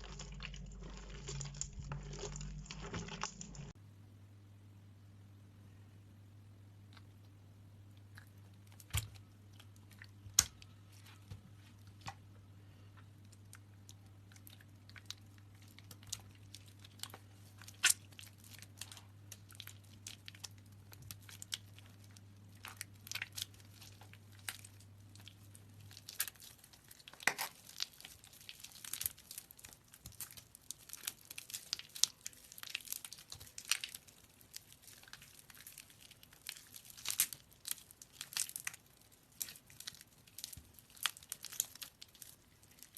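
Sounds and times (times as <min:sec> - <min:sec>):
soap crackling when squeezed: 0:13.2 - 0:42.9.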